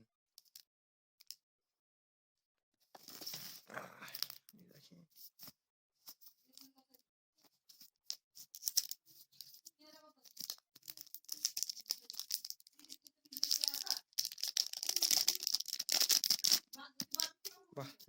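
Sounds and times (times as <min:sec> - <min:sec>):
plastic packaging crinkling: 0:08.5 - 0:09.6, 0:10.2 - 0:17.5.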